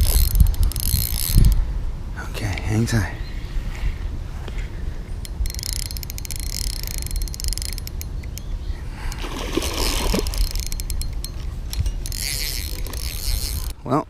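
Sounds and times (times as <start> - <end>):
fishing reel clicking and whirring: 0.0 - 1.6, 5.2 - 8.5, 9.1 - 13.8
wind rumble on microphone: 0.0 - 13.8.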